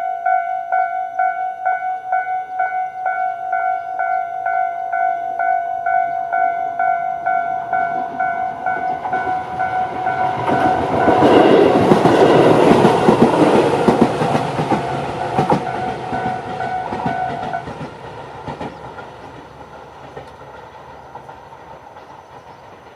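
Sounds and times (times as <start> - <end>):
crossing warning bell: 0.0 - 17.9
train wheels clicking over rail joints: 7.8 - 22.9.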